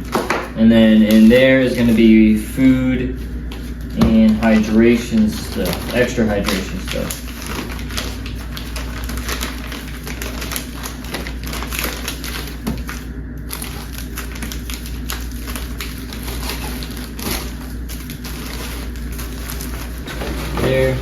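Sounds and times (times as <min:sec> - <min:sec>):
plastic bags crinkling: 0:00.0 - 0:02.4, 0:03.1 - 0:21.0.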